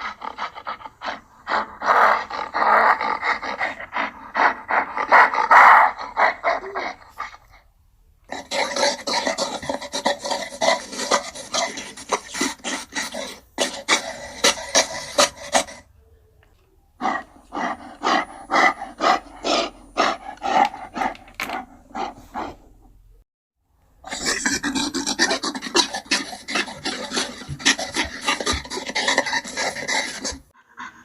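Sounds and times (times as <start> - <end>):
gorilla grunting: 0.0 - 7.5, 8.3 - 15.8, 24.0 - 31.0.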